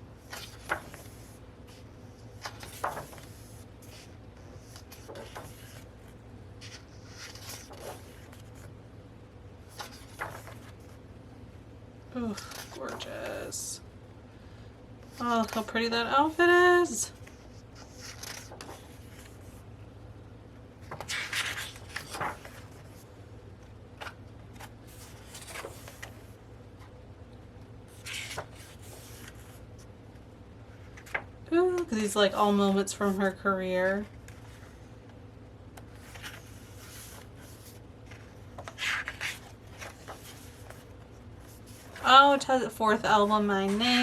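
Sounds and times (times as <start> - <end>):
book pages turning: 0.2 - 8.8, 9.6 - 11.0, 12.3 - 13.3, 17.1 - 19.6, 20.8 - 27.0, 27.9 - 29.9, 30.7 - 31.3, 34.0 - 42.2
paper rustle: 0.2 - 8.8, 9.7 - 11.0, 12.3 - 13.1, 17.1 - 19.6, 20.8 - 23.1, 24.0 - 26.4, 27.9 - 29.9, 30.7 - 31.3, 35.8 - 44.0.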